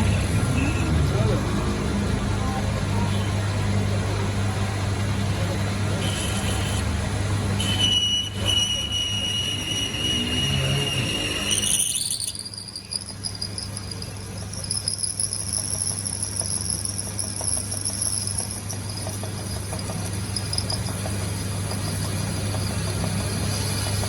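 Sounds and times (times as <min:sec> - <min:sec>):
machine hum and whine: 0:00.0 - 0:24.0
faint irregular ticking: 0:12.4 - 0:23.1.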